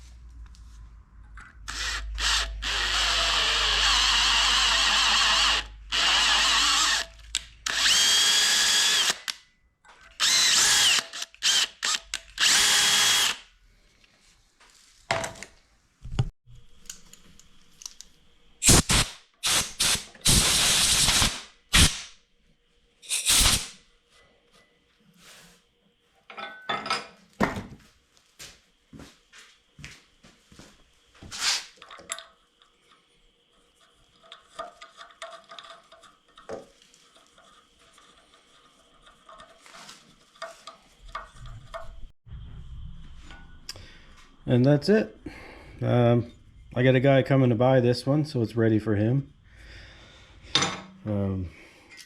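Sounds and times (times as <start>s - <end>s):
power drill running: 1.6s - 9.4s, 10.2s - 13.5s, 18.6s - 21.9s.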